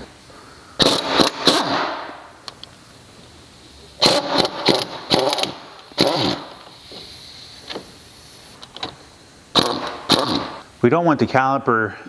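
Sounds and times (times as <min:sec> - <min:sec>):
impact wrench bursts: 0:00.8 - 0:08.9, 0:09.5 - 0:10.6.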